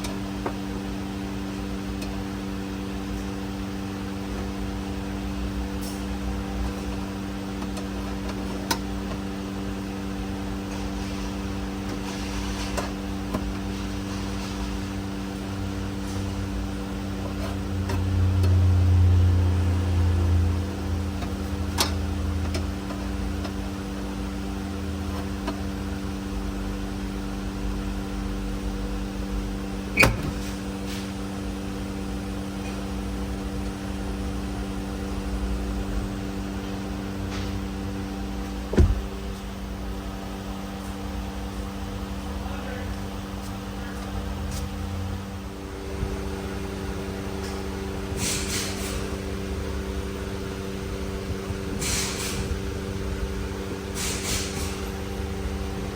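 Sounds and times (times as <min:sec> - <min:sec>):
steady mechanical hum: 0:00.0 - 0:55.9.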